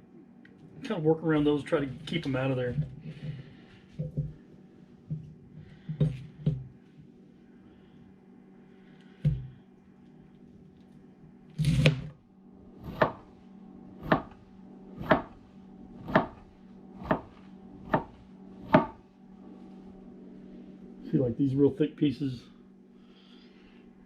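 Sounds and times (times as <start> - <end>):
knife slicing cabbage: 11.6 - 12.1.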